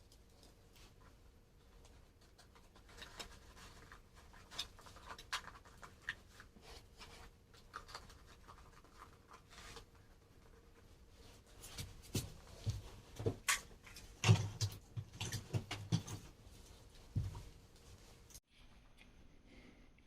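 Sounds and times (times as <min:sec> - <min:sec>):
hands scratching cardboard: 0:02.2 - 0:13.0.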